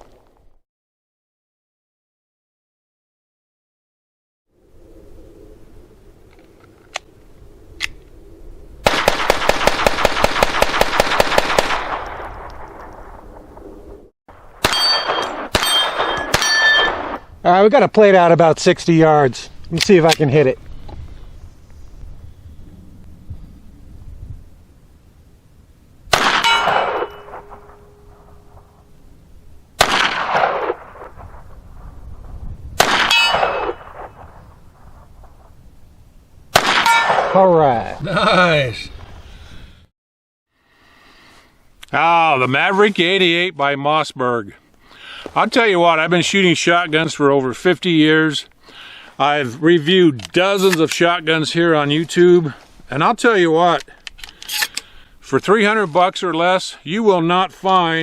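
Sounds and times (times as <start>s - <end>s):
pistol shots with echo: 8.8s - 12.4s, 14.6s - 17.2s, 26.1s - 28.7s, 29.8s - 31.2s, 32.8s - 34.2s, 36.5s - 37.4s
steel target plate ringing: 14.6s - 17.0s, 26.3s - 28.5s, 33.1s - 34.0s, 36.8s - 37.2s.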